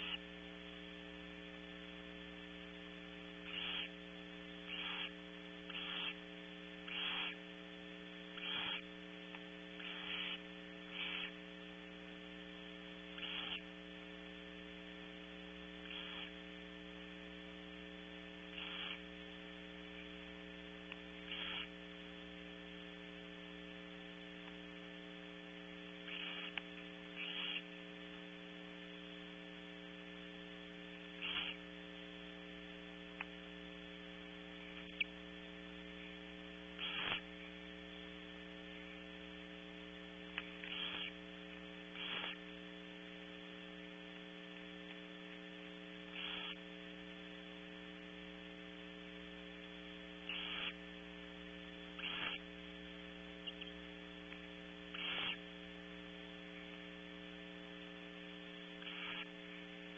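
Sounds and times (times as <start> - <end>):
electrical hum: 0.0 - 59.9
owls hissing: 3.5 - 3.9, 4.7 - 5.1, 5.7 - 6.2, 6.9 - 7.4, 8.4 - 8.8.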